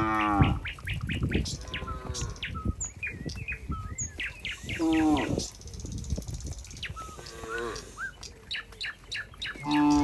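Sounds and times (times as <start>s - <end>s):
cow mooing: 0.0s - 0.6s, 4.8s - 5.4s, 7.2s - 8.0s, 9.6s - 10.0s
small birds chirping: 0.0s - 10.0s.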